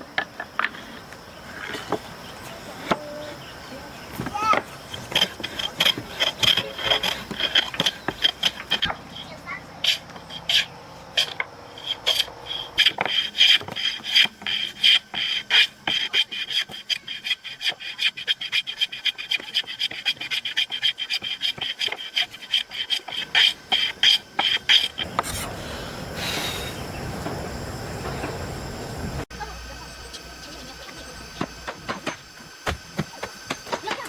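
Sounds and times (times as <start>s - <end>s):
hand tool scraping wood: 0.3s - 3.3s, 4.0s - 26.8s.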